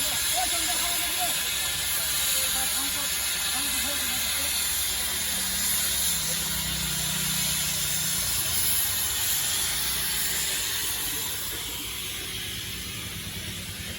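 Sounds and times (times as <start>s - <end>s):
train running with hiss: 0.0s - 13.9s.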